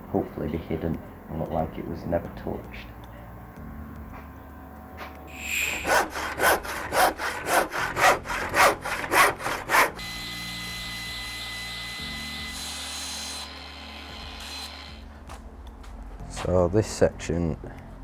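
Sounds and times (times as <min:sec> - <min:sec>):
hand saw cutting wood: 0:05.3 - 0:10.0.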